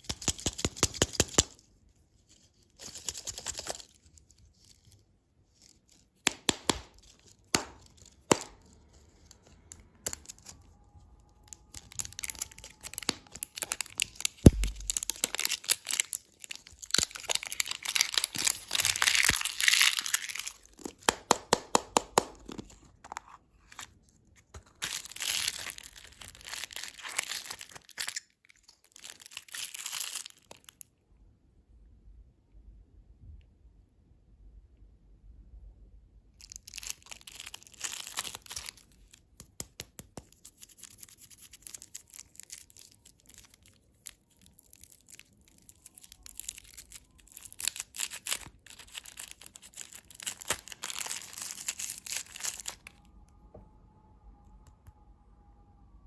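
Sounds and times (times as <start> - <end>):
wrappers tearing and crinkling: 10.1 - 21.1, 24.6 - 30.8, 36.4 - 39.4, 40.3 - 53.0
sharp knock: 14.5 - 15.1.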